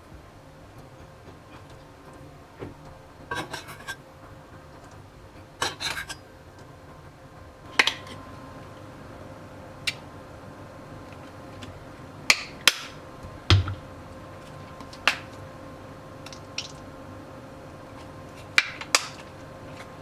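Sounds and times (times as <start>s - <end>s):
faint steady hum: 0.0s - 20.0s
dishes and utensils clinking: 3.3s - 4.0s, 5.6s - 6.3s.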